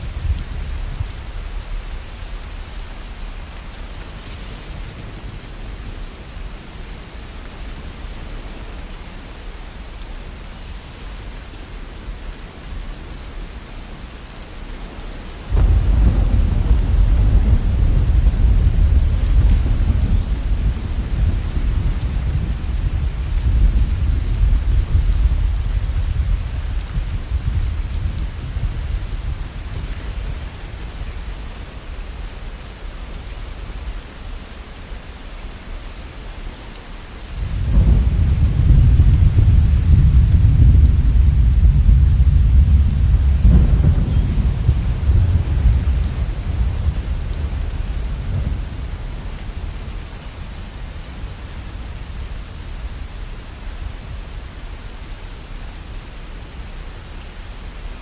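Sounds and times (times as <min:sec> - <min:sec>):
heavy rain: 0:00.0 - 0:58.0
thunder rumble: 0:15.3 - 0:31.9, 0:37.4 - 0:52.8.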